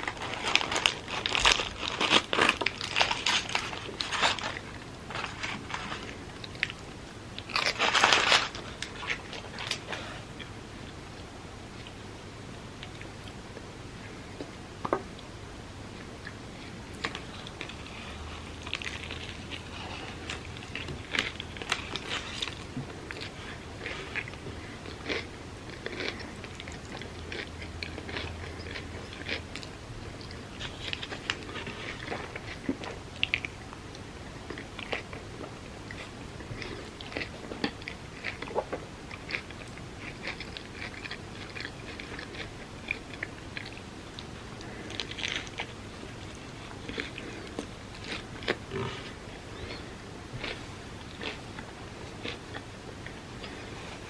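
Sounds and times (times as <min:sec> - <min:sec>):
person biting and chewing food: 0:16.2 - 0:33.6, 0:34.5 - 0:54.0.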